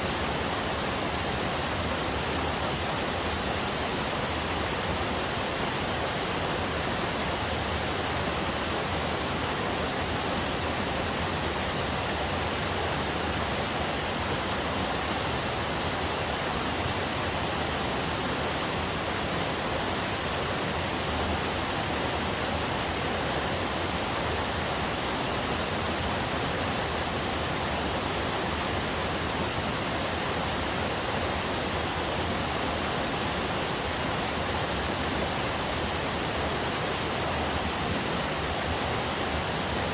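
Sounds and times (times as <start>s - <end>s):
small waterfall rushing: 0.0s - 39.9s.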